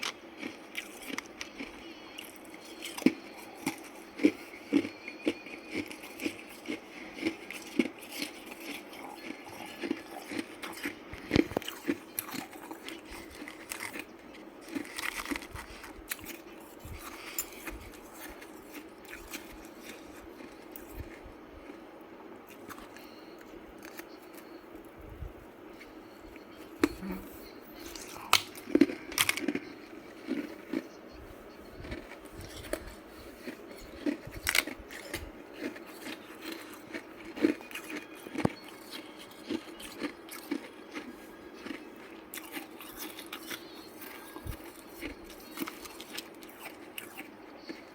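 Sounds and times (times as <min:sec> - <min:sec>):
ice being chewed: 0:00.0 - 0:21.8, 0:22.5 - 0:25.0, 0:25.7 - 0:47.9.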